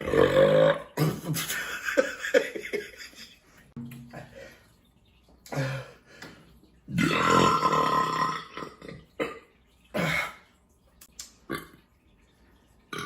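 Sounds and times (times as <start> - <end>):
man burping: 0.0 - 1.5, 6.9 - 10.4.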